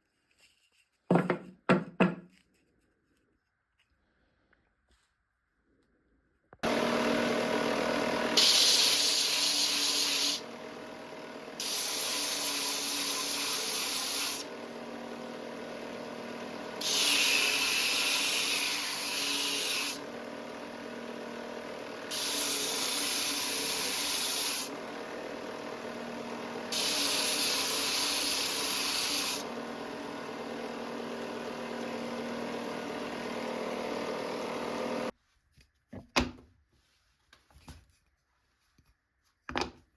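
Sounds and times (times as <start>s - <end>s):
electric power tool on wood: 6.6s - 35.2s.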